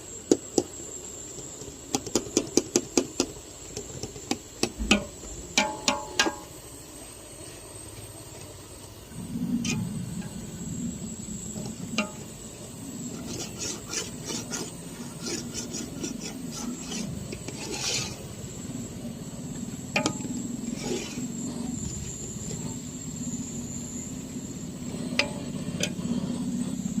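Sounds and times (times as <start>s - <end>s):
low hum: 4.8s - 27.0s
spoon scraping in a pot: 13.1s - 18.3s, 20.0s - 21.7s.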